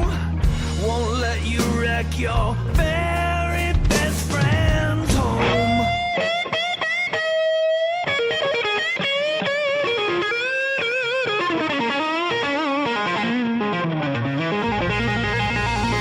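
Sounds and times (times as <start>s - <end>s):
electric guitar blues solo: 0.0s - 16.0s.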